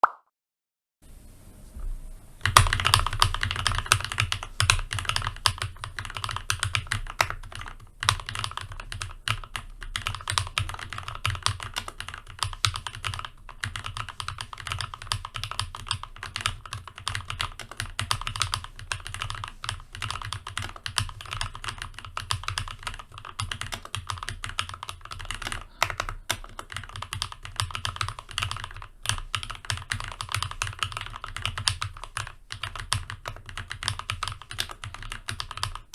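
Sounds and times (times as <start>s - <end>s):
mechanical keyboard typing: 2.4s - 35.9s.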